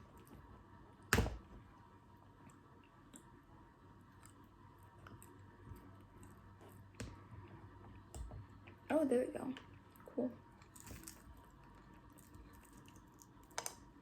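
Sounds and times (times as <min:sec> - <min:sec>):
wet chewing clicks: 0:09.6 - 0:13.8.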